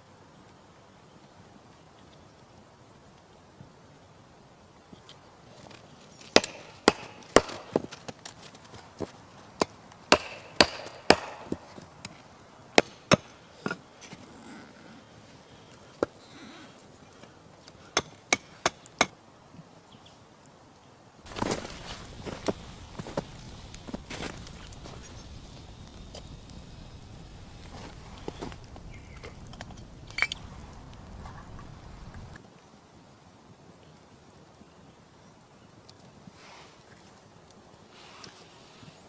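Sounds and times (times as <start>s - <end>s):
axe chopping wood: 6.4s - 7.9s, 9.6s - 11.8s.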